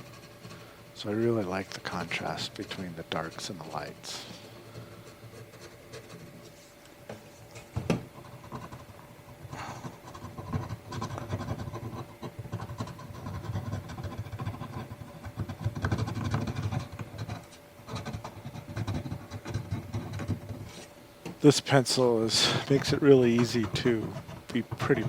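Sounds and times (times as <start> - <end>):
pencil strokes scratching on paper: 22.3 - 25.0.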